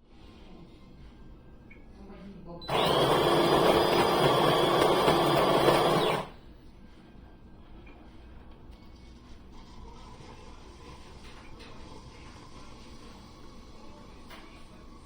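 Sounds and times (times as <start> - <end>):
espresso machine motor whirring: 2.7 - 6.4.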